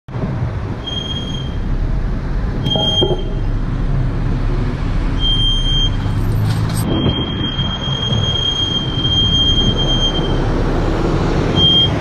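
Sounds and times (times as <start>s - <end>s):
low rumble of moving car: 0.1s - 12.0s
high-pitched brake squeal: 0.8s - 1.6s, 2.6s - 3.5s, 6.8s - 10.4s.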